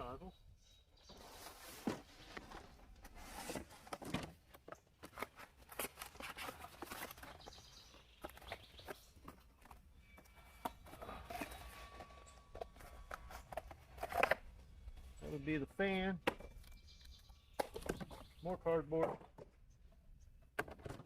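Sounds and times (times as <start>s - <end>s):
crinkles scrapes and small clicks: 1.1s - 14.5s
cardboard packaging rustling: 1.2s - 14.6s.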